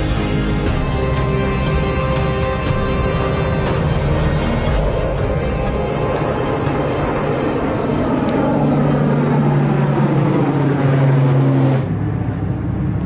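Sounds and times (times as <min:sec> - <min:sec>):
aircraft engines roaring: 0:00.0 - 0:13.0
outdoor noise: 0:00.0 - 0:13.0.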